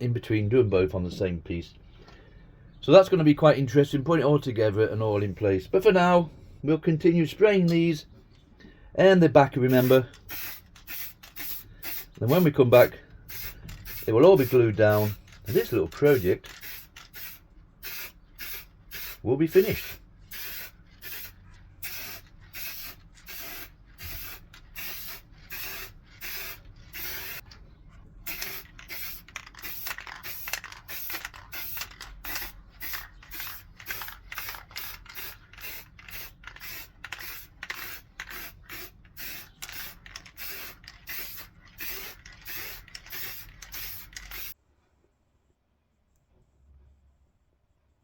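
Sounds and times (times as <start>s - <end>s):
aerosol can spraying in hissing bursts: 9.6s - 27.4s, 28.3s - 44.6s.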